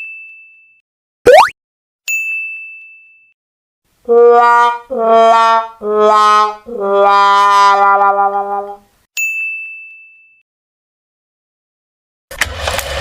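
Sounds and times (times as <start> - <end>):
ding: 0.0 - 0.8, 2.1 - 3.4, 9.2 - 10.4
sad trombone sound effect: 4.1 - 8.8.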